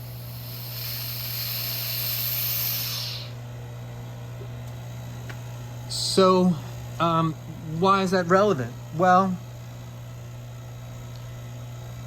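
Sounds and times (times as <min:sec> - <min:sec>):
air hissing into vacuum chamber: 0:00.0 - 0:03.4
steady low hum: 0:00.0 - 0:12.0.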